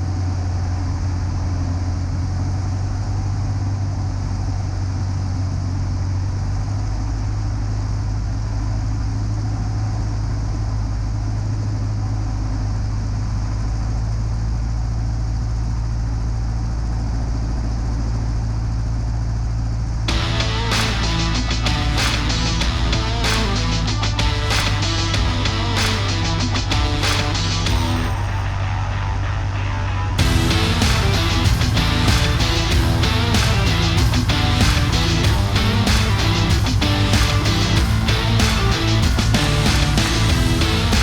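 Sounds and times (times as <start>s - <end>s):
air rushing: 30.2s - 41.0s.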